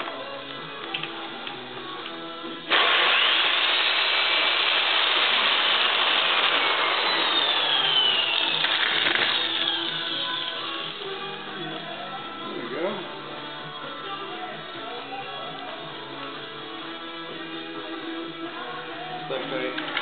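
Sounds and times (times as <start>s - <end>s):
drill whining through acrylic: 2.7s - 12.5s.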